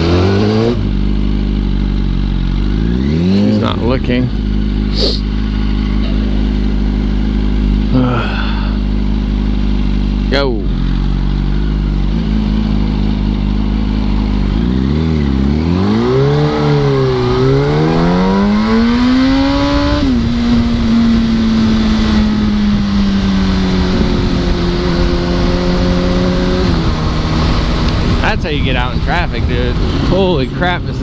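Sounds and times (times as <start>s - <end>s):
motorcycle engine accelerating: 0.0s - 31.0s
wind rushing over microphone: 16.8s - 31.0s.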